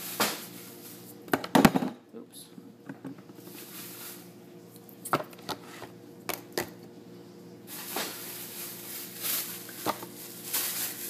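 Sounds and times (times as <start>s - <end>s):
faint steady hum: 0.0s - 11.0s
plastic bag rustling: 3.4s - 4.4s, 7.7s - 11.0s.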